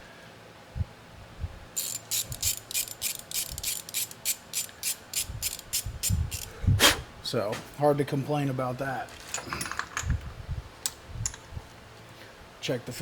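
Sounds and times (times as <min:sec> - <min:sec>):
ratcheting tool clicking: 0:01.8 - 0:06.5.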